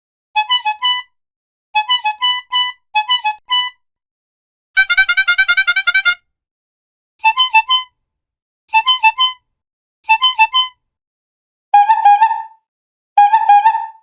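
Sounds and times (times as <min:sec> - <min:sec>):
clown horn honking: 0:04.8 - 0:06.2.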